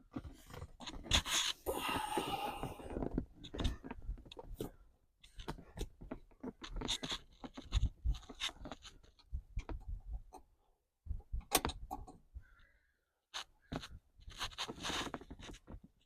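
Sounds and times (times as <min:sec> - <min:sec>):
plastic connector clicks and scrapes: 0:00.1 - 0:01.6, 0:03.0 - 0:10.5, 0:13.3 - 0:16.0.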